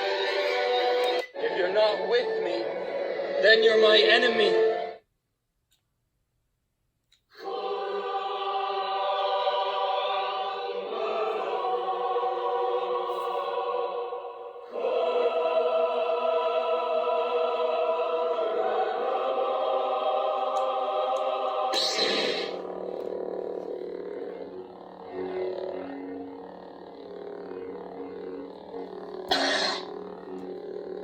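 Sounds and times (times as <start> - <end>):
choir and orchestra music: 0.0 - 5.0, 7.4 - 22.8.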